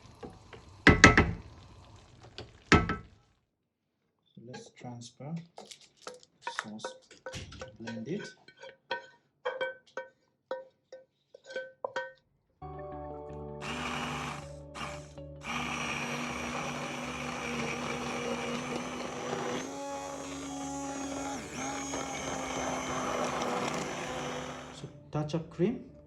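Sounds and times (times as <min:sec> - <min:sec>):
electric blender running: 0:13.6 - 0:24.9.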